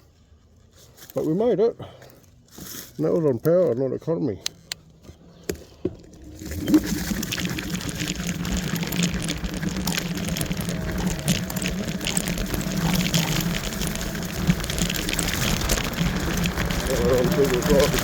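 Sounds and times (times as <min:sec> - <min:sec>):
rattles: 0:06.3 - 0:18.0
tyres rumbling on rough track: 0:06.3 - 0:18.0.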